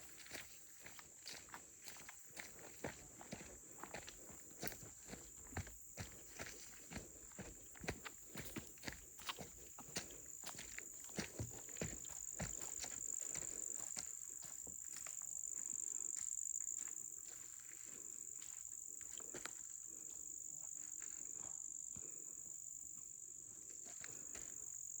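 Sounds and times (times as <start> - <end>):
insects chirping: 0.0 - 25.0.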